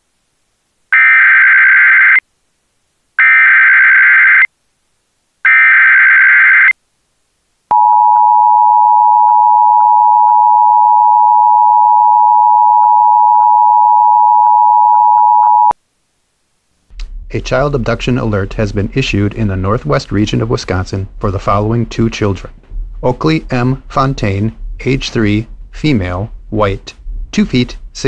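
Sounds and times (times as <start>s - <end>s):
two-tone attention signal: 7.7s - 15.7s.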